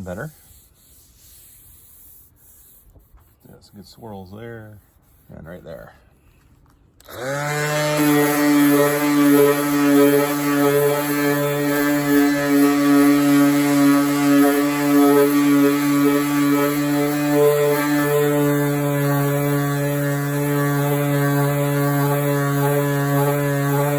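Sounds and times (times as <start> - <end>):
power sander running: 7.0 - 23.9.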